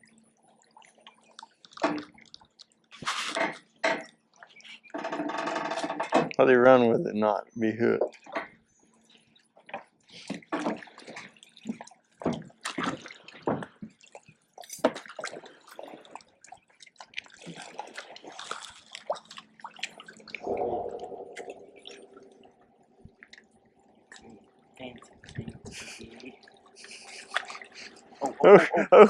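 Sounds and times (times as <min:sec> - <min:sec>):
water lapping and splashing: 0:00.0 - 0:06.8, 0:08.0 - 0:29.0
steady hum: 0:20.4 - 0:23.2.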